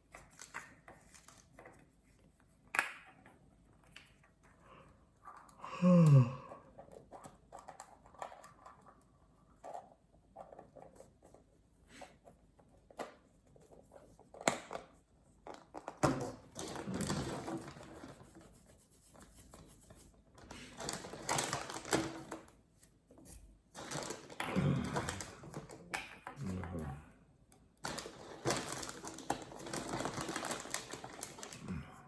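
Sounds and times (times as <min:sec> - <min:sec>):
wrappers crinkling: 0:20.5 - 0:22.4, 0:23.8 - 0:25.6, 0:27.8 - 0:31.8.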